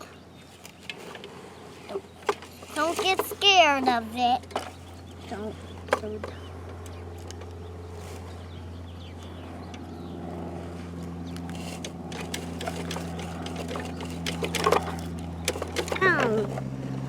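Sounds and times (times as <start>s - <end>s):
low engine hum: 0.0s - 17.0s.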